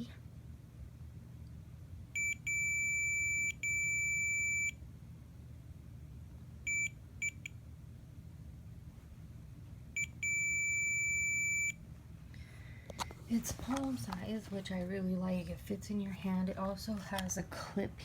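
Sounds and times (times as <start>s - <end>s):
multimeter continuity beeps: 2.2s - 4.8s, 6.7s - 7.5s, 10.0s - 11.8s.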